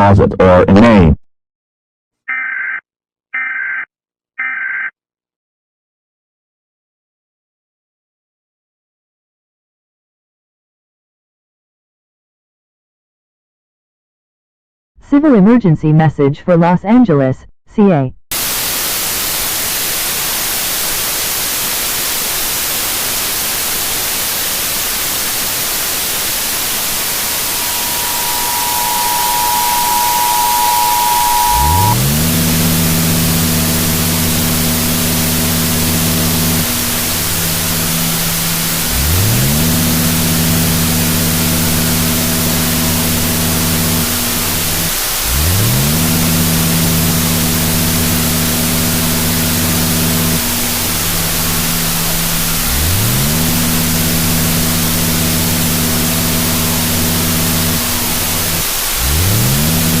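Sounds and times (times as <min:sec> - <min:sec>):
static hiss: 0:18.3 - 1:00.0
low buzzing drone sweeping up: 0:25.1 - 1:00.0.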